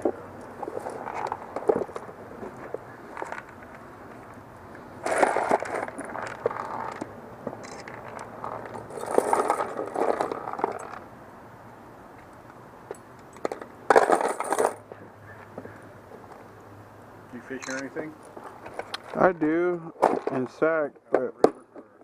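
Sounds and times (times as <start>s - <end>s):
metal clinking and scraping: 7.6s - 11.0s, 13.0s - 14.9s.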